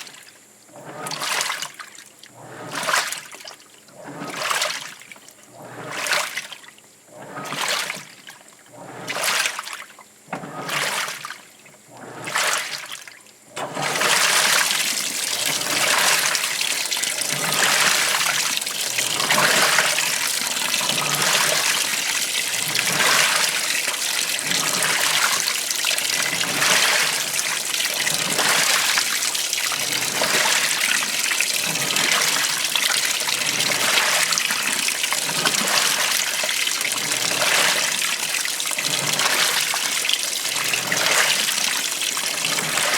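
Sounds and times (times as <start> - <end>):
water rushing into tub: 0.0 - 42.9
water splashing: 13.6 - 42.9.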